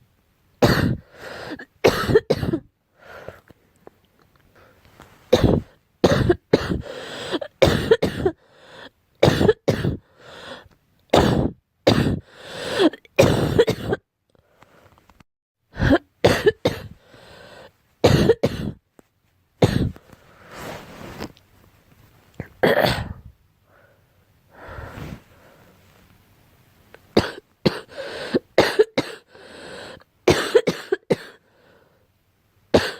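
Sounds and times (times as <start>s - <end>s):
girl coughing: 0.6s - 2.6s, 5.3s - 8.4s, 9.2s - 10.0s, 11.2s - 14.0s, 15.8s - 17.0s, 18.0s - 18.8s, 19.6s - 20.0s, 22.5s - 23.2s, 27.2s - 29.3s, 30.3s - 31.4s.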